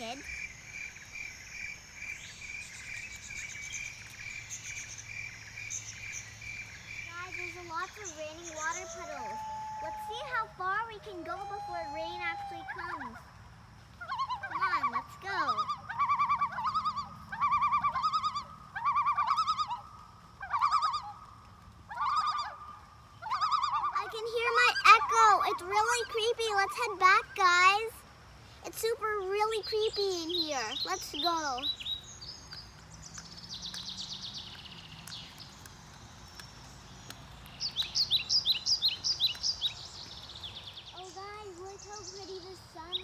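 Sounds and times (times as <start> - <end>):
rapid high bird trill: 0.0 - 10.4
songbirds singing: 0.0 - 21.2, 21.9 - 43.0.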